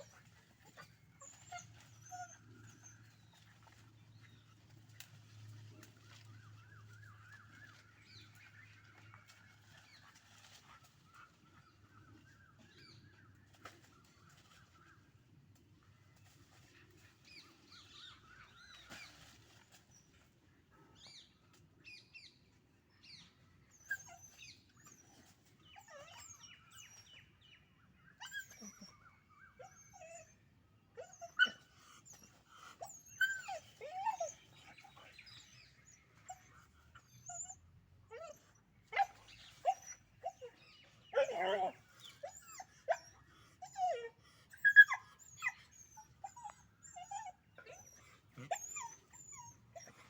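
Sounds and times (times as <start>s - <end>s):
puppies yelping and squealing: 28.2s - 29.0s, 31.0s - 35.6s, 37.0s - 50.0s.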